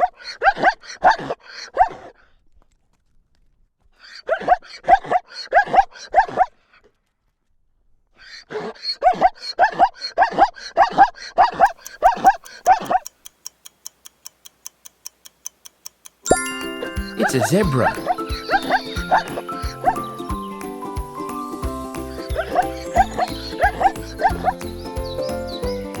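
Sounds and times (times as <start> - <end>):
fast even ticking: 11.8 - 18.8.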